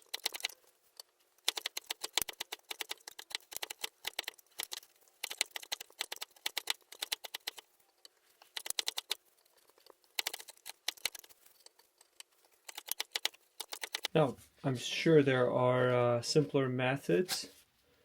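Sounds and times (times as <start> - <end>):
knife carving wood: 0.0 - 14.2.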